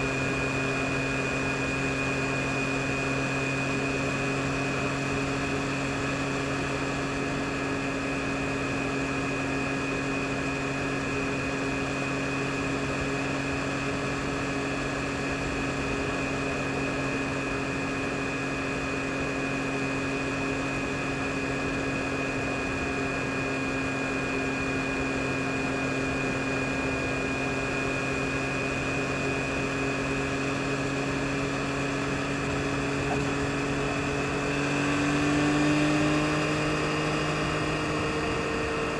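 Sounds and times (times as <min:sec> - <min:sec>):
motorcycle engine running: 0:29.5 - 0:38.9
road noise: 0:31.0 - 0:38.9.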